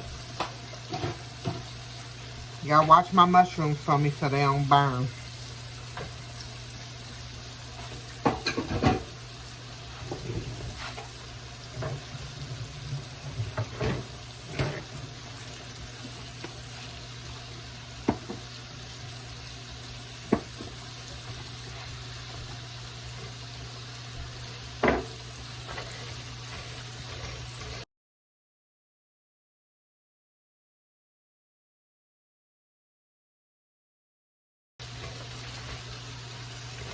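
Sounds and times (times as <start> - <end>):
mushrooms sizzling in hot oil: 0.0 - 27.8, 34.8 - 36.9
kitchenware knocks and clinks: 8.2 - 9.1.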